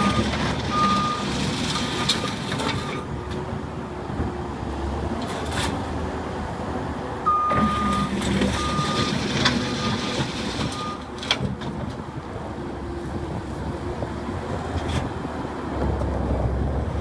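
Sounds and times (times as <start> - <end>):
diesel engine running: 0.0 - 4.2, 7.0 - 14.4
reverse alarm beeping: 7.3 - 9.1.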